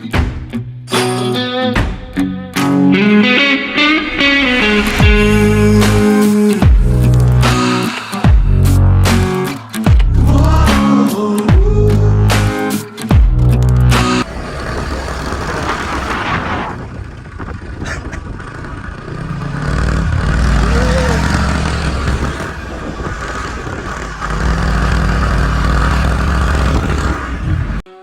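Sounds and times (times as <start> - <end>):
steady rushing noise: 4.0 - 9.6, 13.9 - 27.8
scooter engine running under load: 13.1 - 27.8.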